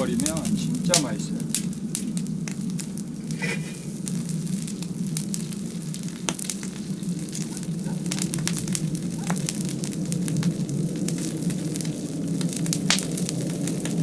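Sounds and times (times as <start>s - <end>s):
steady low hum: 0.0s - 9.9s
fire crackling and popping: 0.0s - 14.0s
fish sizzling on a grill: 0.0s - 14.0s.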